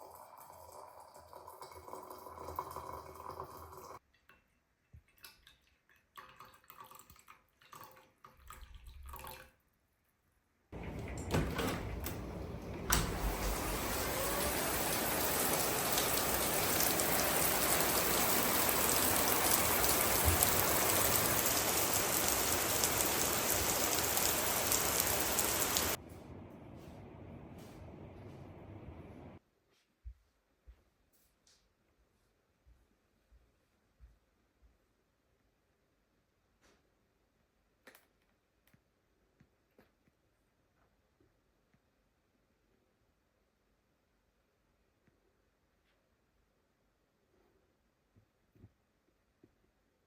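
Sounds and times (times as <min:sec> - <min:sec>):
running water: 0:10.8 - 0:29.4.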